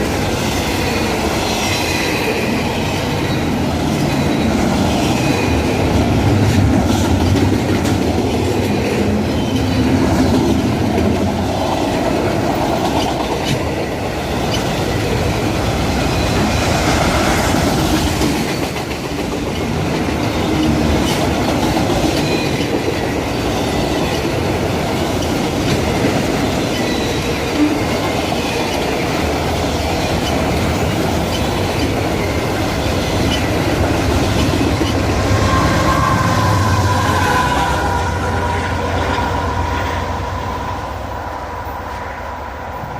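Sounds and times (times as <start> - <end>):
freight train rolling past: 0.0 - 42.9.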